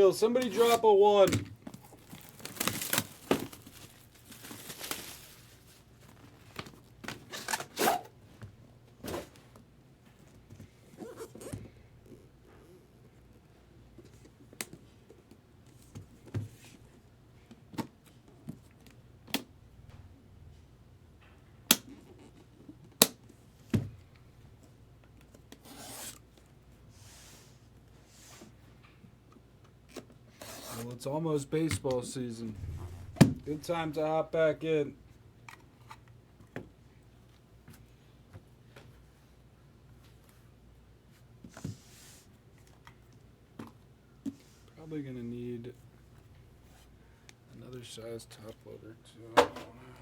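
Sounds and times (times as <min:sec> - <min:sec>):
packaging tearing and crinkling: 0:01.7 - 0:05.7.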